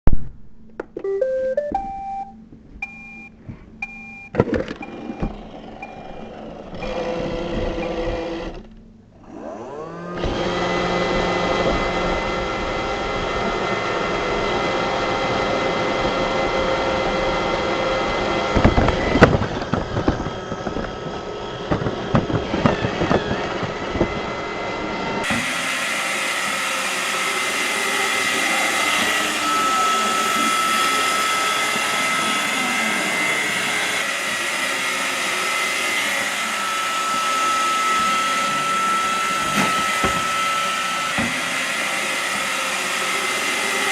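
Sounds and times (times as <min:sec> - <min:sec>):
robot vacuum beeping tune: 0:00.7 - 0:08.8, 0:25.2 - 0:43.9
robot vacuum motor whirring: 0:04.4 - 0:43.9.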